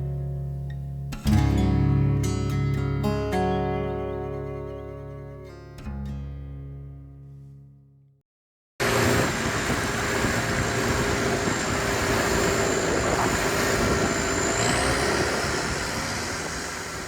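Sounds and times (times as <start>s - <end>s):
boat engine running: 8.8s - 17.0s
thin high whine: 8.8s - 17.0s.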